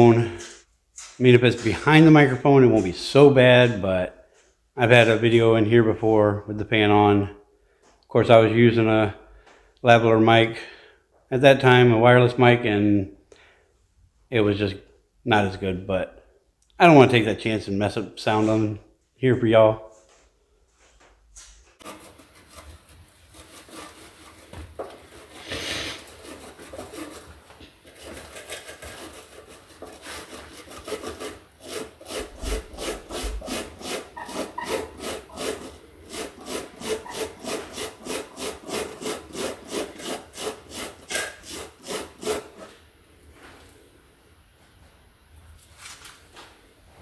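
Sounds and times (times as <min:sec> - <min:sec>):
scraping corrosion off metal: 0:21.8 - 0:42.7.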